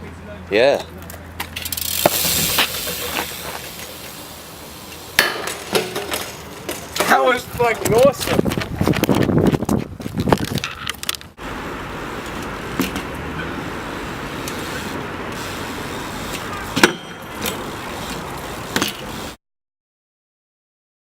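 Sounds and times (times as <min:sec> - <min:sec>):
outdoor background noise: 0:00.0 - 0:19.4.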